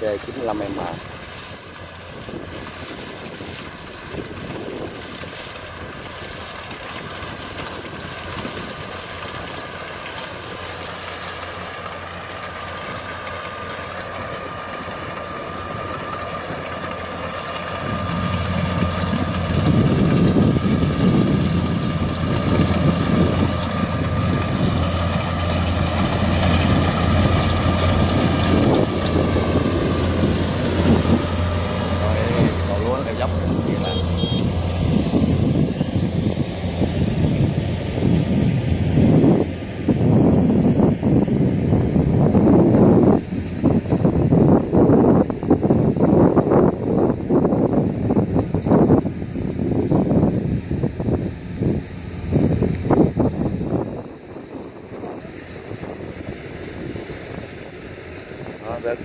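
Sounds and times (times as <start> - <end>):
combine harvester engine running: 0.0 - 59.0
steady high whine: 11.9 - 41.2.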